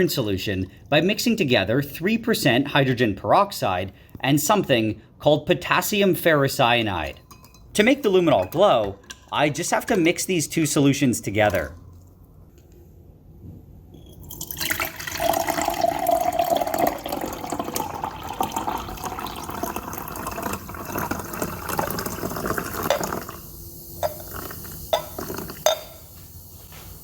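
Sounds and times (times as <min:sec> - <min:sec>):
liquid pouring and splashing: 0:14.1 - 0:26.3.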